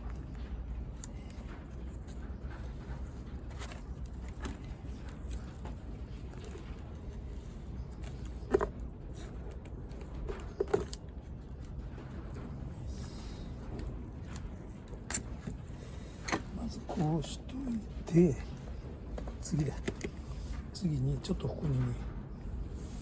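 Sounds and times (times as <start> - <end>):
tape rustling: 0.0 - 20.7
steady low hum: 0.0 - 23.0.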